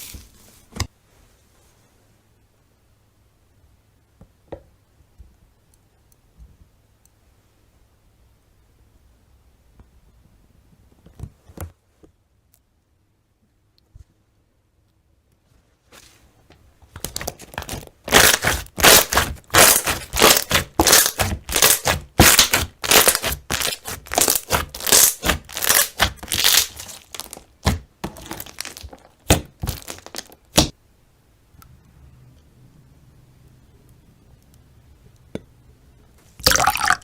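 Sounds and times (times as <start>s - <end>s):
slime popping and crackling: 16.9s - 30.7s, 36.4s - 37.0s.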